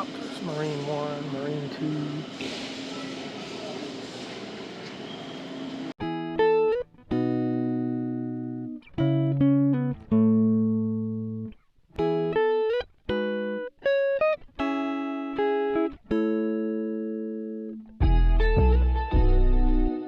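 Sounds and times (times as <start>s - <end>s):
plucked guitar chords: 6.0s - 20.0s.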